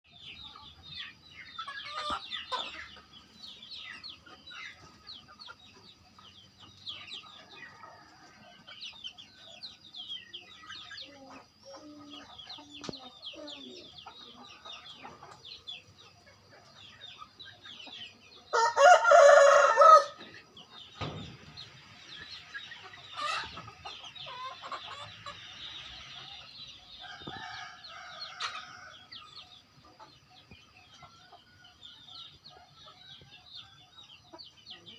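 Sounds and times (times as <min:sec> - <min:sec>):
chickens clucking and peeping: 0:00.0 - 0:34.9
rooster crowing: 0:18.5 - 0:20.2.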